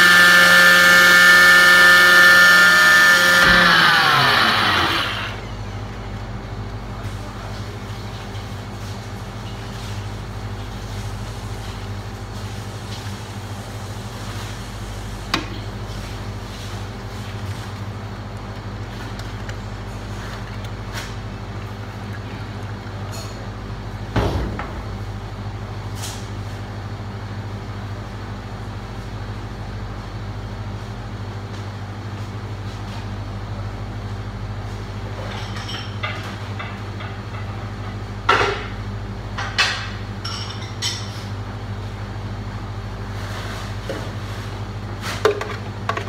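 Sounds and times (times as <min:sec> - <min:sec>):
low mechanical hum: 0:00.0 - 0:46.0.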